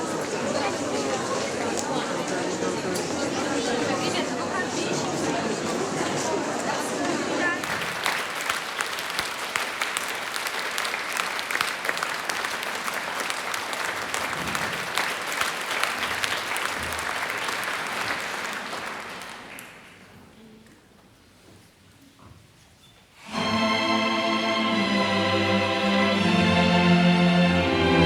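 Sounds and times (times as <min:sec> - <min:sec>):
audience applauding: 0:07.6 - 0:20.1.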